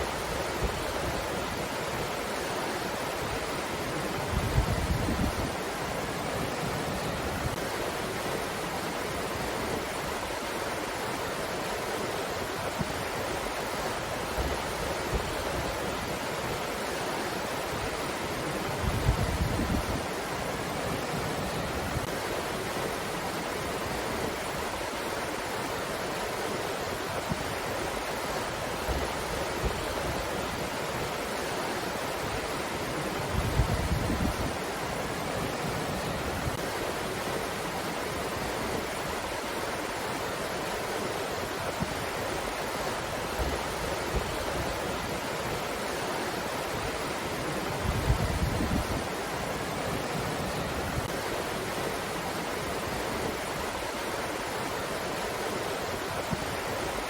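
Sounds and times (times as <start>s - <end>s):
wind buffeting microphone: 18.8s - 20.0s, 33.2s - 34.6s, 47.7s - 51.2s.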